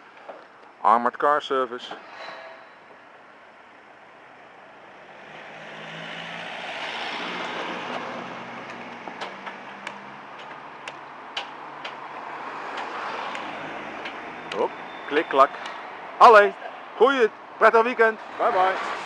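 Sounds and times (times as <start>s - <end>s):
sharp clicks: 8.6s - 12.1s, 12.7s - 14.7s.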